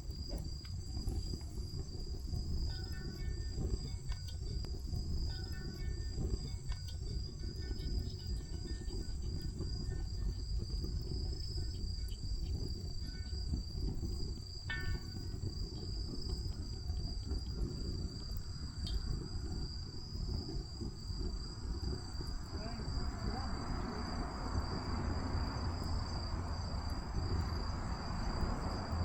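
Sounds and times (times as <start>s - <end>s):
crickets trilling: 0.0s - 29.0s
low steady rumble: 0.0s - 29.0s.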